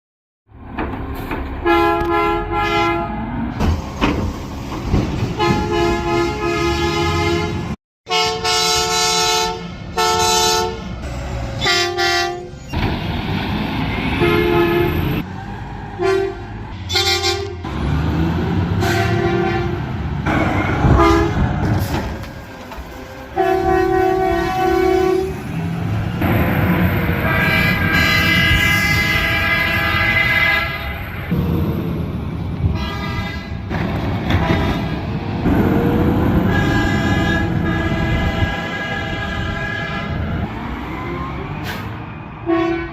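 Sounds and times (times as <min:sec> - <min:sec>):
garbage truck horns honking: 0:01.6 - 0:03.4, 0:05.3 - 0:12.7, 0:14.1 - 0:15.2, 0:16.0 - 0:17.8, 0:18.7 - 0:25.5, 0:27.1 - 0:31.3, 0:32.7 - 0:33.7, 0:36.3 - 0:40.5, 0:42.4 - 0:42.9.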